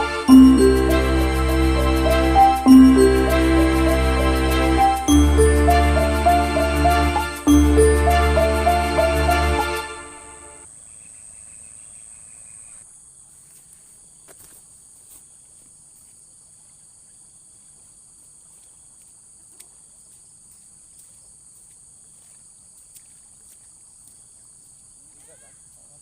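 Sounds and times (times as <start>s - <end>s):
held tone: 0.0s - 10.5s.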